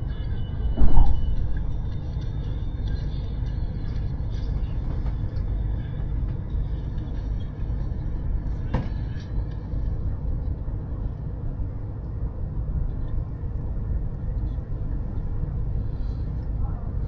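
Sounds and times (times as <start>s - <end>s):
train rumble inside carriage: 0.0s - 17.0s
loud thump: 0.8s - 1.3s.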